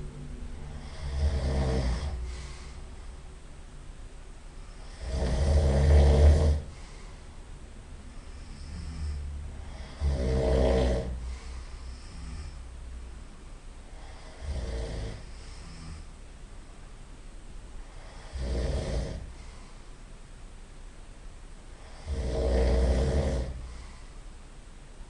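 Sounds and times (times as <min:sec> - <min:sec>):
quiet breathing: 0:00.0 - 0:03.5, 0:04.3 - 0:16.6, 0:17.6 - 0:20.6, 0:21.3 - 0:25.0
person snoring: 0:00.6 - 0:02.8, 0:04.7 - 0:07.2, 0:08.2 - 0:12.7, 0:13.9 - 0:16.1, 0:17.8 - 0:19.5, 0:21.8 - 0:24.0.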